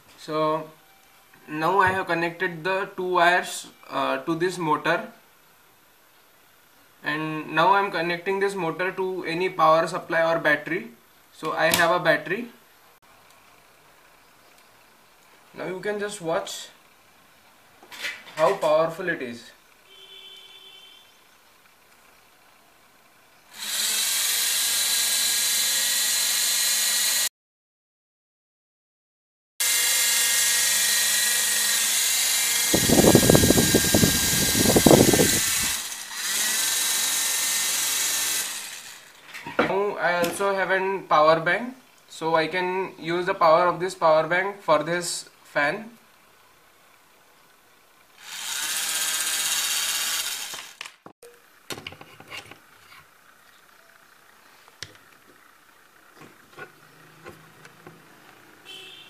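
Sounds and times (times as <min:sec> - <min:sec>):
small motor high whine: 0:23.5 - 0:27.3, 0:29.6 - 0:39.2, 0:48.2 - 0:50.8.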